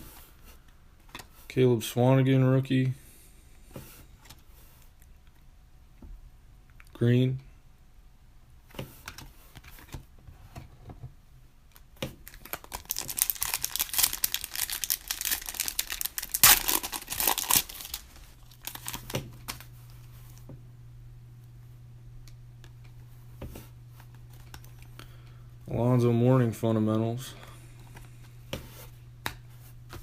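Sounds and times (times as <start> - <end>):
foil wrapper tearing and crinkling: 12.2 - 19.6.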